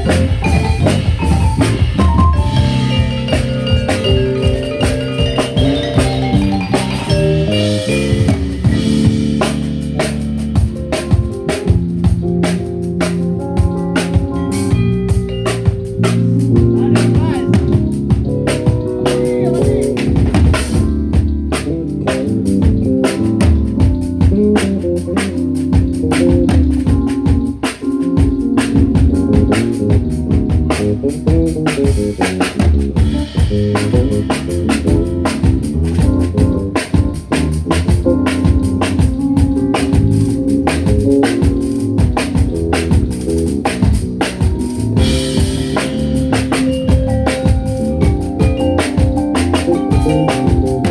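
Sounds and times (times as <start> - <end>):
drum kit beating: 0.0 - 50.9
fusion band playing: 0.0 - 50.9.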